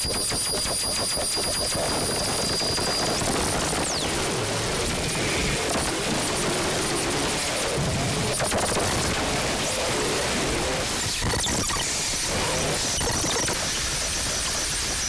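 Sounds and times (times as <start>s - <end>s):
falling whine: 0.0s - 15.0s
harsh noise wall of hiss: 1.6s - 15.0s.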